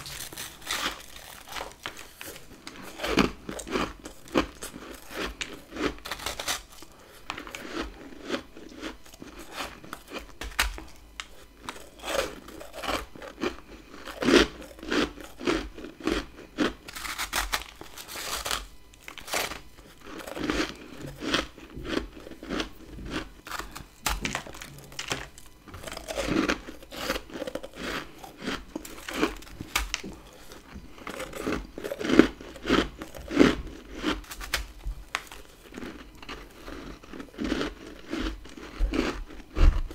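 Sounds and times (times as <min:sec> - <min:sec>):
crunching bites into frost: 0:00.0 - 0:39.9
chewing: 0:11.1 - 0:34.2.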